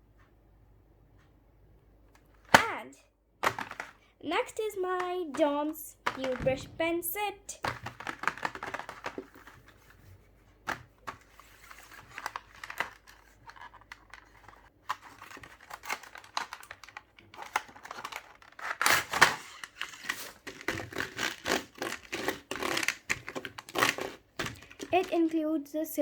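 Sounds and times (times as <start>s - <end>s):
packaging crinkling: 3.4s - 4.0s, 7.7s - 9.9s, 11.1s - 25.3s
packaging tearing: 15.1s - 25.2s.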